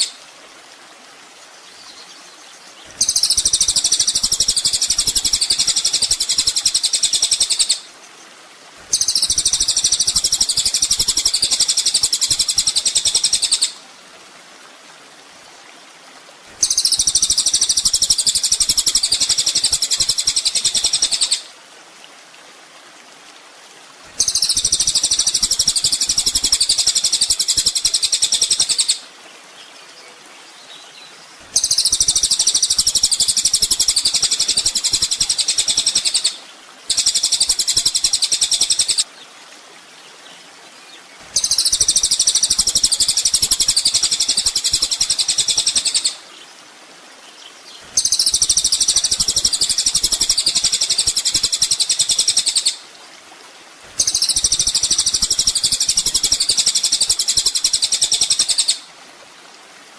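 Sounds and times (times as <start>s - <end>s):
bird twittering trill: 2.9s - 7.8s, 8.9s - 13.8s, 16.6s - 21.4s.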